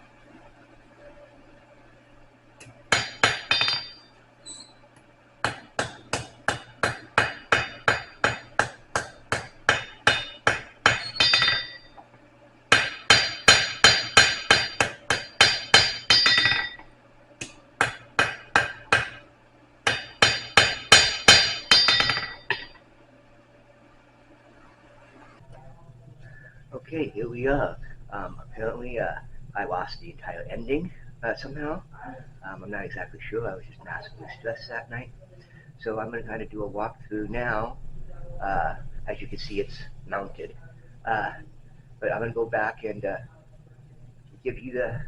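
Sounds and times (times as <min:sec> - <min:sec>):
hammer ringing on anvil: 0:02.9 - 0:04.1, 0:05.4 - 0:12.0, 0:12.7 - 0:16.9, 0:19.9 - 0:22.8.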